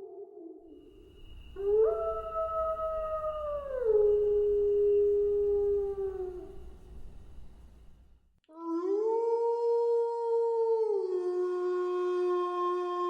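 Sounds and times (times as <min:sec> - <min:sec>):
wolves howling: 0:00.8 - 0:08.0.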